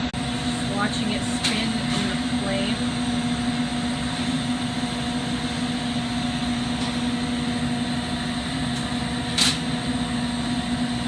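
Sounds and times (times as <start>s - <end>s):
glass torch flame roaring: 0.0s - 11.0s.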